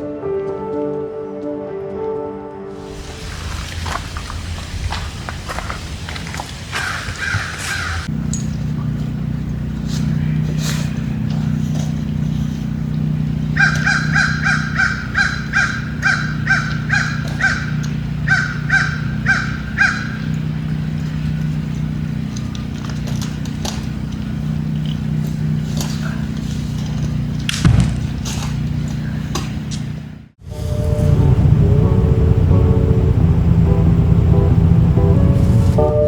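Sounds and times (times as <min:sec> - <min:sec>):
steady low hum: 0:02.8 - 0:36.0
bird repeated short calls: 0:06.6 - 0:08.1, 0:13.6 - 0:20.3
sharp knock: 0:27.6 - 0:28.6.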